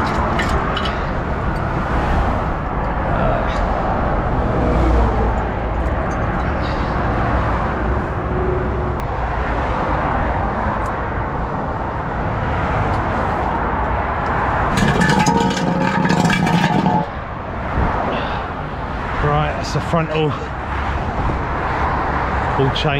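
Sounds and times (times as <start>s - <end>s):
motorway traffic roar: 0.0s - 22.9s
rough sound with pitched hum: 14.7s - 17.1s.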